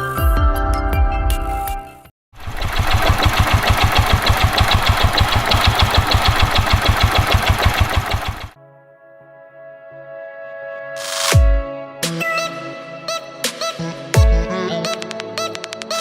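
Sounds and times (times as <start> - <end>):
motorcycle engine idling: 2.4 - 8.5.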